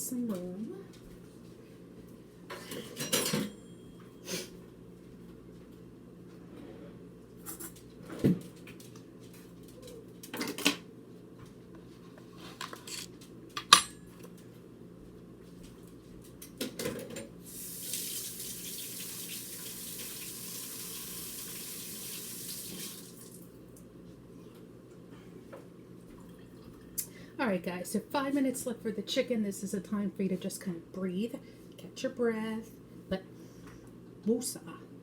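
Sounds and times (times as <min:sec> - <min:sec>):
dishes and utensils clattering: 0:02.5 - 0:03.7, 0:12.6 - 0:14.0.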